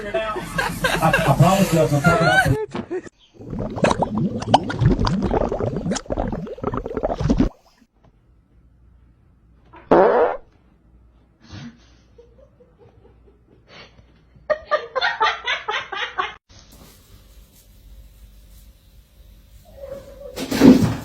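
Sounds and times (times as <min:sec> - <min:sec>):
person laughing: 0:00.1 - 0:03.1.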